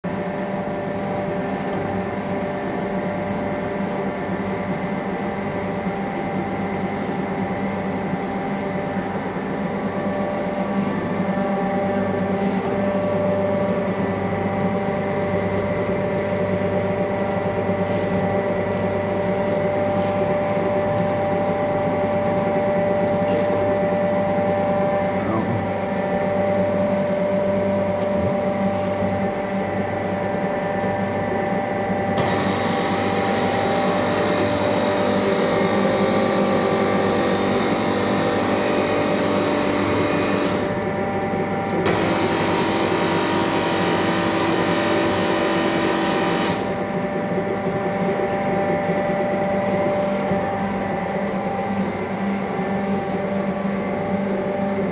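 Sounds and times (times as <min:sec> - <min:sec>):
surface grinder machine hum: 0:31.8 - 0:49.0.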